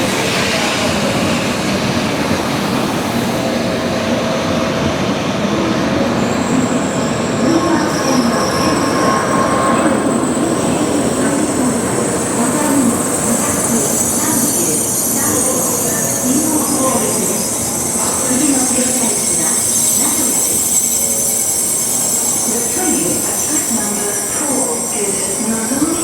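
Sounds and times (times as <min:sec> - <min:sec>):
train wheels and motors running: 0:00.0 - 0:26.0
high-pitched squeal: 0:06.1 - 0:26.0.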